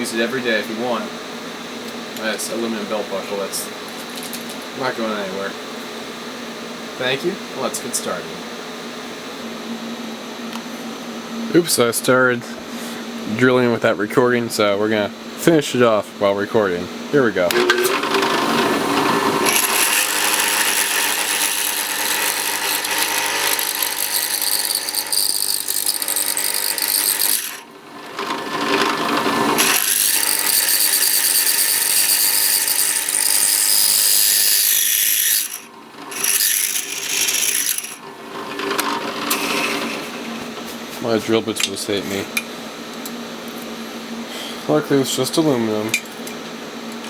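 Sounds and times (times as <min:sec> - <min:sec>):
electric drill boring metal: 0:17.5 - 0:40.3.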